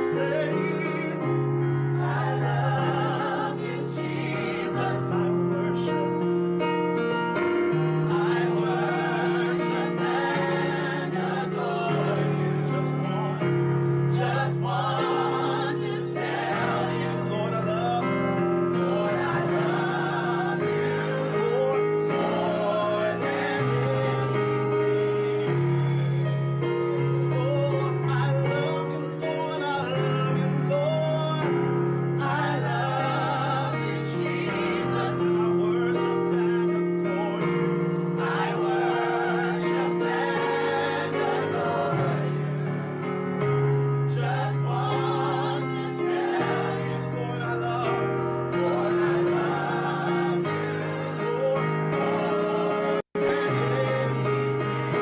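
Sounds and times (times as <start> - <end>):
vocal group singing in harmony: 0.0 - 6.4, 7.7 - 55.0.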